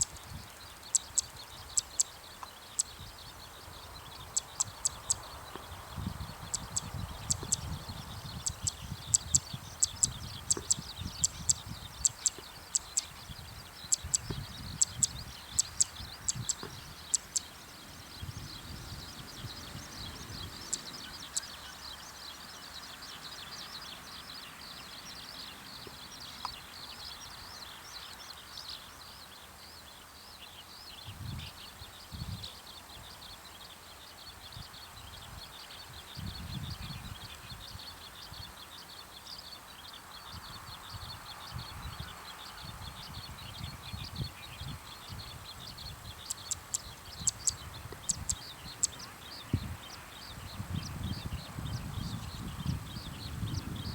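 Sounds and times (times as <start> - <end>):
bird chip calls: 0.0 - 3.1, 4.2 - 5.7, 6.3 - 17.6, 19.3 - 21.9, 46.1 - 50.4.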